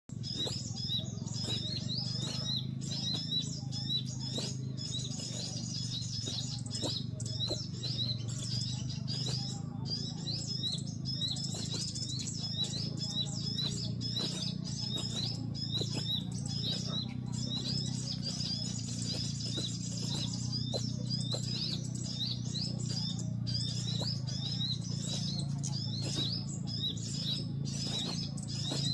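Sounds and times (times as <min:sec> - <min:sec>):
songbird chirping: 0:00.0 - 0:28.9
steady low hum: 0:00.0 - 0:28.9.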